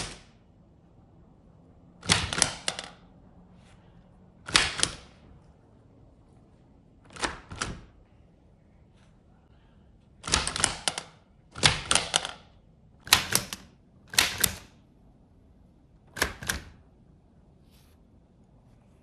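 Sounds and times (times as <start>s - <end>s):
typewriter keys clicking: 2.0s - 3.0s, 10.2s - 12.4s, 13.0s - 14.7s.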